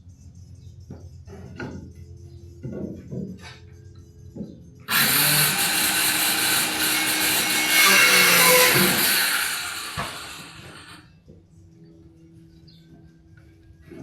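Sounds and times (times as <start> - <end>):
power tool running on wood: 4.9 - 11.0.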